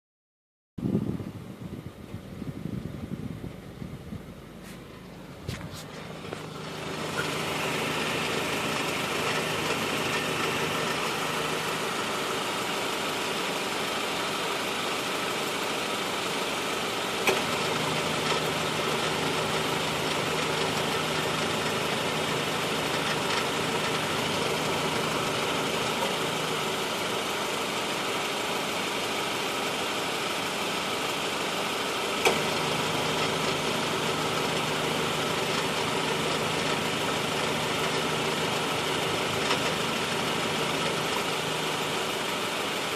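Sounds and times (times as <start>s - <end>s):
car engine idling: 1.5s - 42.9s.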